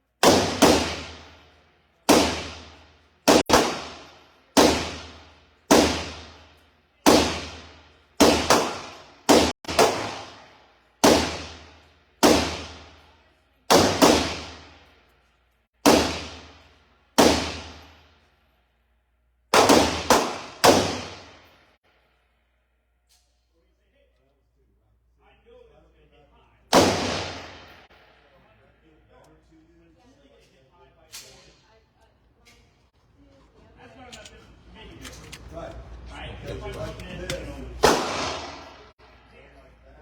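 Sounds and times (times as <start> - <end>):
gunshots echoing indoors: 0.2 - 15.0, 15.8 - 18.2, 19.5 - 21.8, 26.7 - 28.4, 37.8 - 39.0.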